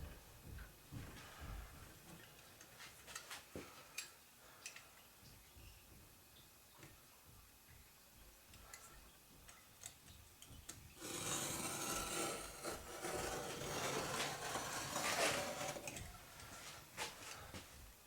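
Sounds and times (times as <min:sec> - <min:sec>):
rasping on wood: 0:11.0 - 0:16.0.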